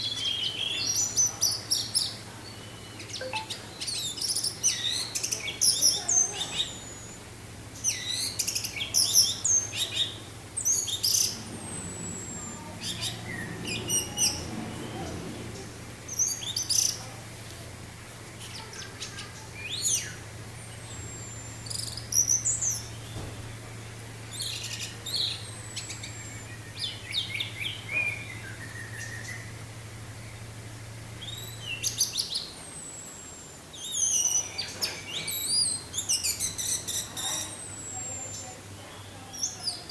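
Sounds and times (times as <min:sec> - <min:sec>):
steady low hum: 0:06.7 - 0:33.7
thrush singing: 0:08.8 - 0:32.0.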